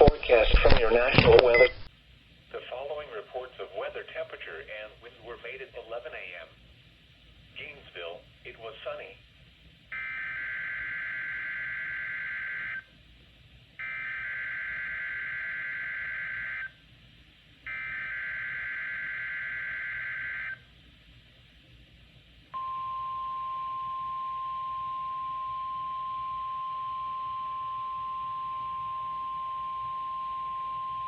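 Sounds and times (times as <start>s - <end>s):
steady warning alarm tone: 9.9s - 12.9s, 13.8s - 16.8s, 17.6s - 20.7s, 22.6s - 31.0s.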